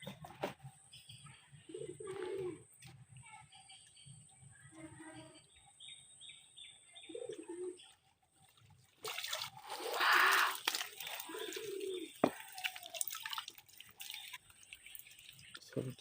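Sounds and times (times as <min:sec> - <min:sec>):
water splashing and dripping: 0:08.3 - 0:16.0.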